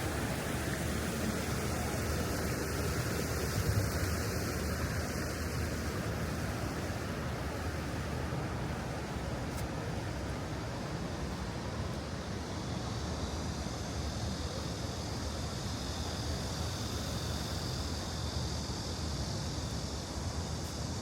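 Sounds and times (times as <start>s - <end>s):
stream water flowing: 0.0s - 12.3s.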